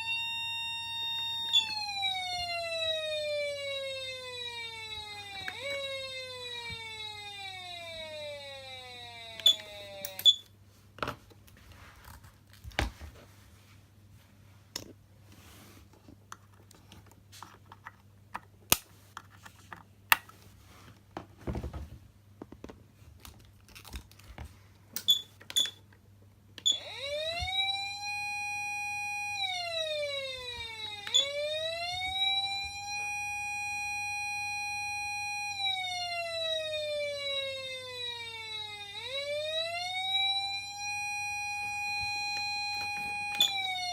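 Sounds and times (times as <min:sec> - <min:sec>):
electronic siren wailing: 0:00.0 - 0:10.5, 0:26.7 - 0:43.9.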